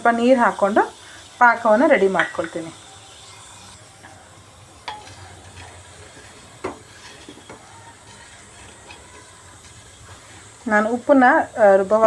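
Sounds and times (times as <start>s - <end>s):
faint steady hiss: 0.0s - 12.0s
jaggery melting in a pan: 0.0s - 12.0s
spoon knocking against a pan: 2.2s - 2.7s, 4.8s - 9.8s.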